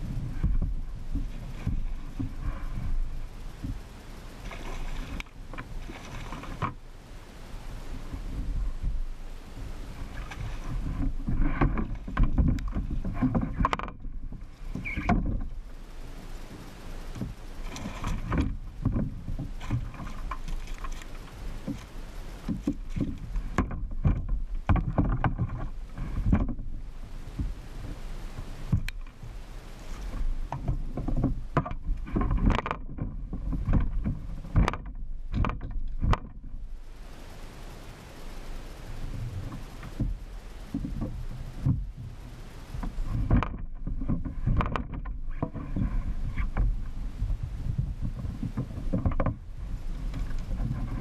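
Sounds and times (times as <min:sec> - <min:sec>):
kayak splashing and sloshing: 0:00.0 - 0:51.0
knocks against kayak hull: 0:10.2 - 0:15.5, 0:21.6 - 0:26.7, 0:30.5 - 0:36.5, 0:39.4 - 0:42.2, 0:42.8 - 0:46.9, 0:47.7 - 0:49.4.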